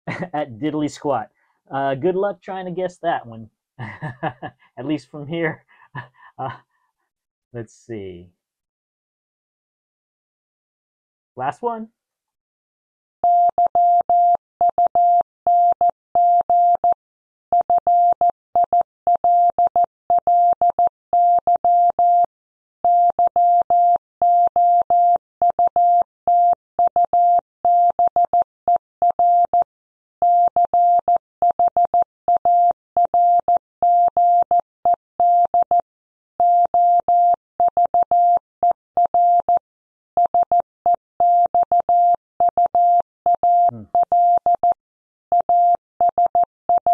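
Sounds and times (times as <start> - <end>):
morse code tone beeps: 13.2 - 17.0, 17.6 - 22.3, 22.9 - 28.4, 30.2 - 35.8, 36.4 - 39.6, 40.2 - 46.9.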